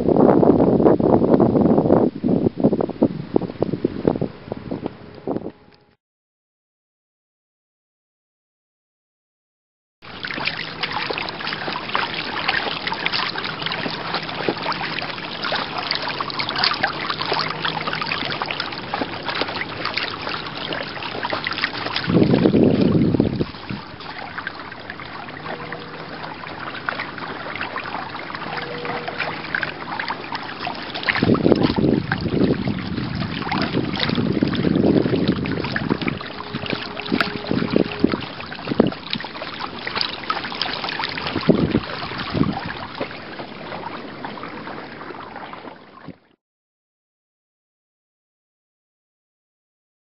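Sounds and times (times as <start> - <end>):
wind on microphone: 0.0 - 6.0, 10.1 - 46.3
water sloshing: 10.0 - 46.3.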